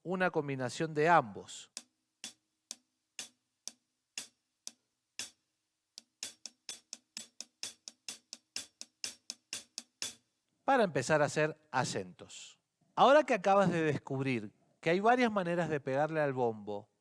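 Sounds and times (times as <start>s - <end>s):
hi-hat played with drumstick: 1.7s - 10.4s.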